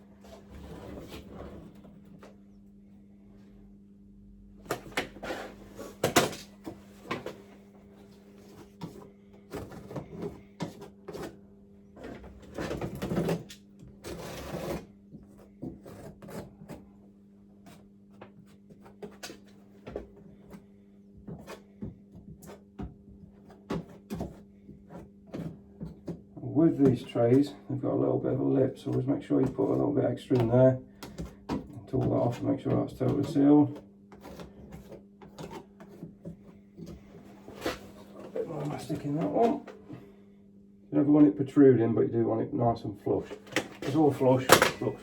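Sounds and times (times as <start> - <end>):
low steady hum: 0.0 - 45.0
scraping: 36.8 - 40.0.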